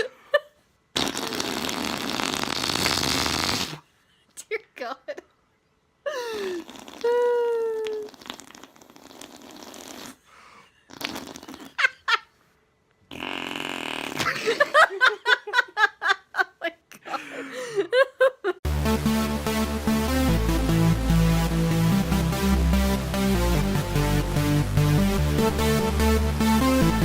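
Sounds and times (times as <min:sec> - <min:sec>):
person laughing: 0:00.0 - 0:00.6, 0:14.2 - 0:18.6
mouth fart noises on arm: 0:01.0 - 0:03.8, 0:06.5 - 0:12.0, 0:13.1 - 0:14.6.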